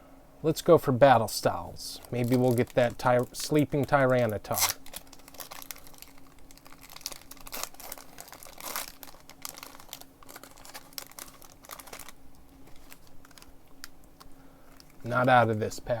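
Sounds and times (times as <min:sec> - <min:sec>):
foil wrapper crinkling and tearing: 0:02.0 - 0:15.6.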